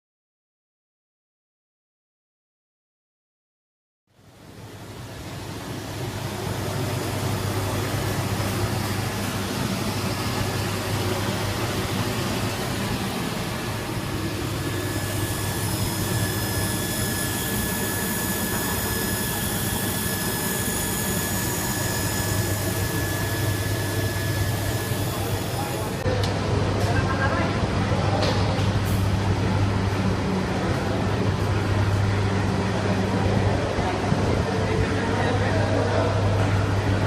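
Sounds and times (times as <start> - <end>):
industrial machine humming and rushing: 4.3 - 37.0
high-pitched whine tones: 9.8 - 26.0.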